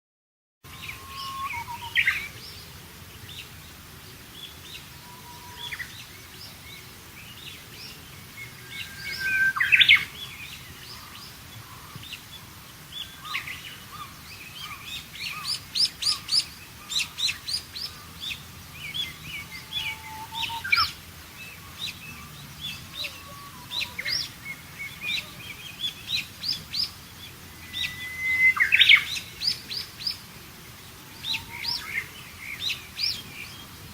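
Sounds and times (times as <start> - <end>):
birds singing and calling: 0.7 - 33.9
bird whistle with rising flourish: 0.8 - 2.3, 8.4 - 10.3, 18.8 - 21.0, 27.6 - 29.3.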